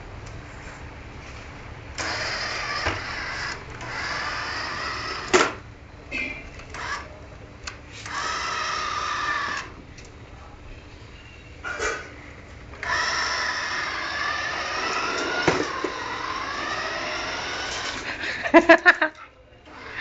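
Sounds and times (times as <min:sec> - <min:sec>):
toy car motor whirring: 0:02.0 - 0:05.6, 0:06.6 - 0:07.1, 0:07.9 - 0:09.8, 0:12.8 - 0:18.2, 0:19.6 - 0:20.0.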